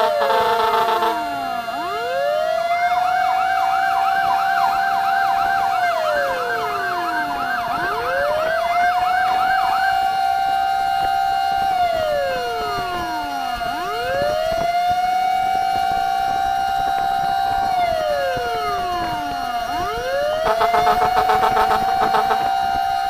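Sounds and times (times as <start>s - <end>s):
horn blast: 0.0s - 2.2s, 20.4s - 23.0s
steady siren tone: 0.0s - 23.0s
wailing siren: 0.0s - 23.0s
yelping siren: 0.0s - 23.0s.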